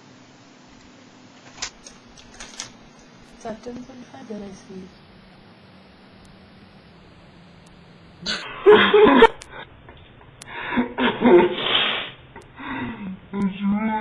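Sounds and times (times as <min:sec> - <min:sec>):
person sneezing loudly: 0:10.8 - 0:12.2.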